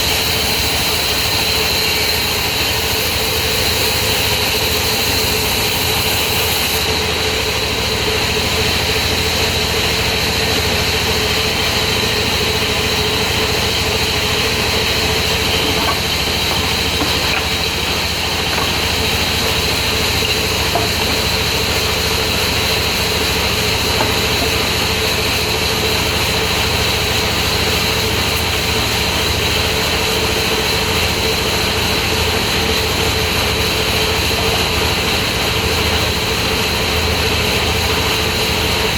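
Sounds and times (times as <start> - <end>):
high machine whine: 0.0 - 37.2
sawmill machinery drone: 0.0 - 38.9.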